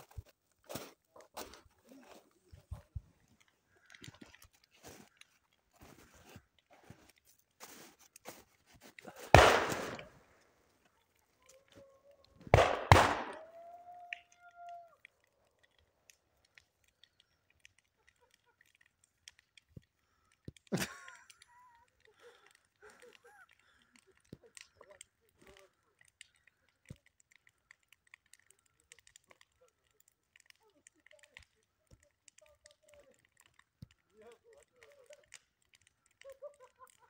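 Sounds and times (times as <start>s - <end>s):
light crackles: 0.0s - 37.0s
loud crunching bursts: 8.8s - 10.5s, 12.4s - 13.4s.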